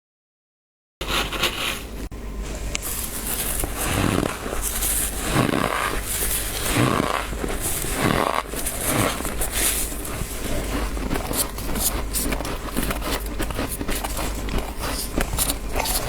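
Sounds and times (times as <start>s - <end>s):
hand stroking crunching frost: 1.0s - 16.0s.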